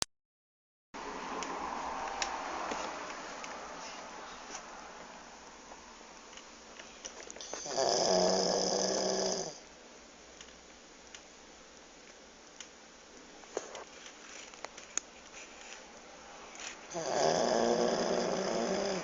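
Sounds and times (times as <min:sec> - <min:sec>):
dog snoring: 0:07.4 - 0:09.6, 0:16.9 - 0:19.0.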